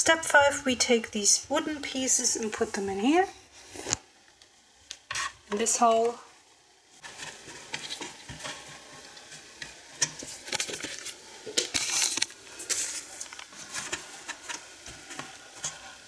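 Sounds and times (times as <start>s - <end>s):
scraping rustle: 7.0s - 16.0s.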